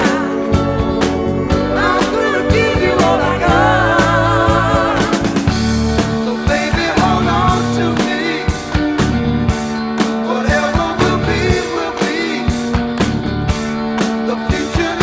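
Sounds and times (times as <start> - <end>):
person singing: 0.0 - 5.5, 10.2 - 12.8, 14.3 - 15.0
guitar: 0.0 - 15.0
steady drum beat: 0.0 - 15.0.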